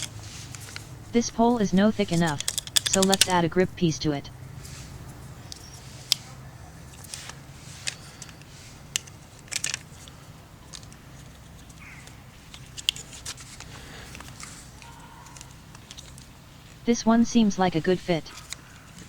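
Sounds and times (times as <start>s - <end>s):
low steady hum: 0.8s - 5.5s, 16.8s - 18.5s
plastic pieces clicking: 2.2s - 3.3s.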